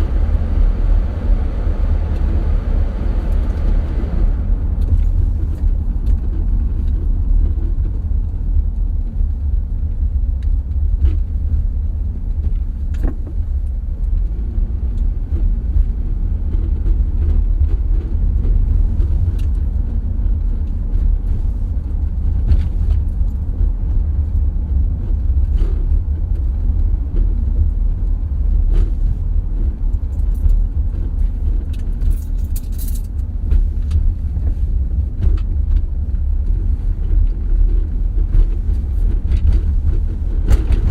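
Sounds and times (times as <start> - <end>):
tyres rumbling on bumpy road: 0.0 - 40.9
car knocks and rattles: 10.0 - 40.9.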